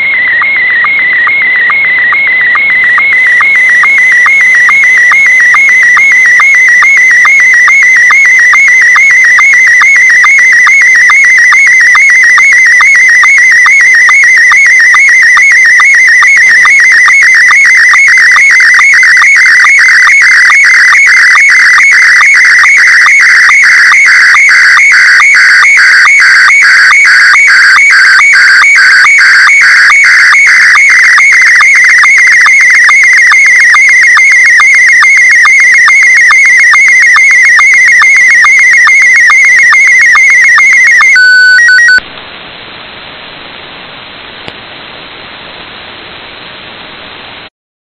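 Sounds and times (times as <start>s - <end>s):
warbling electronic tone: 0.0s - 24.0s
short sync pulses: 0.0s - 35.0s.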